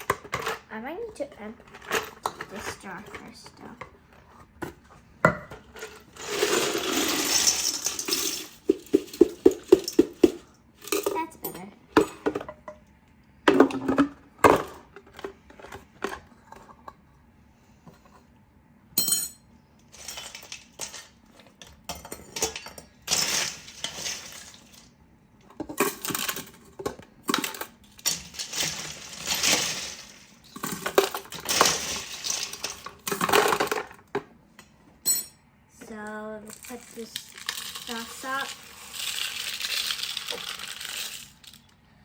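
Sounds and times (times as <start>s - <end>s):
ice rattling against glass jars: 5.7s - 11.5s, 19.9s - 24.9s, 25.6s - 34.0s, 36.5s - 41.7s.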